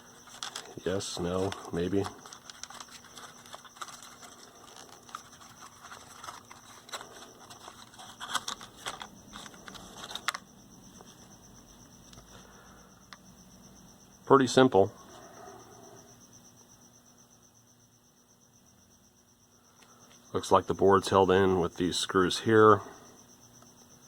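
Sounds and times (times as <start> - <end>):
clicks and scrapes of radio parts: 0.1 - 10.4.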